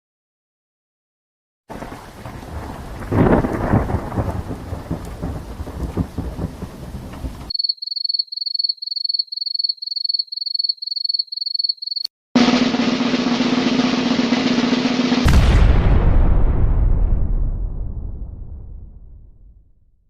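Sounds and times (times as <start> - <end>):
rain: 1.7 - 7.5
thunder rumble: 1.7 - 7.5, 12.4 - 19.8.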